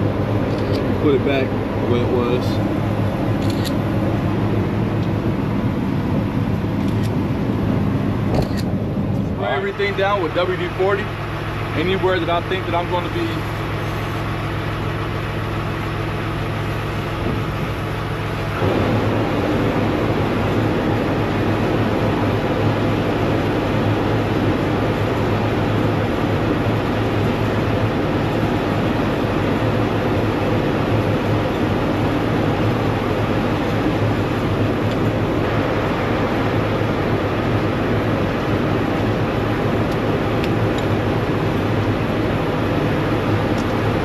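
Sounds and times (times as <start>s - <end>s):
engine running with low hum: 0.0s - 44.0s.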